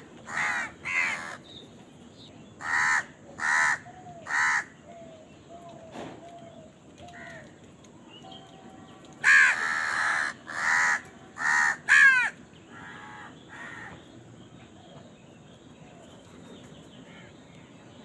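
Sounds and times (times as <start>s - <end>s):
crow cawing: 0.3s - 1.4s, 2.6s - 4.8s, 9.2s - 14.0s.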